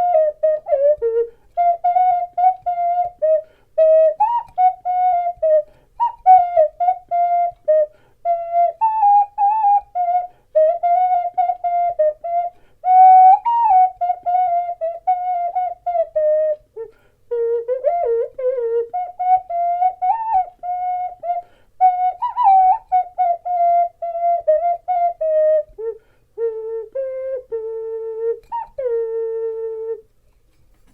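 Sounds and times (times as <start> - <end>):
ocarina melody: 0.0 - 30.9.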